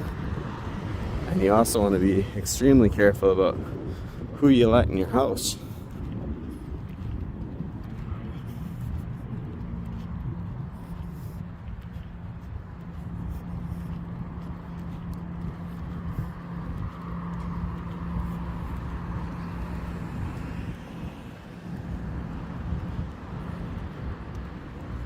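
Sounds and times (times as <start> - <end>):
constant low hum: 0.0 - 25.0
steady rumble of cars: 0.0 - 25.0
vehicle passing by: 0.0 - 25.0.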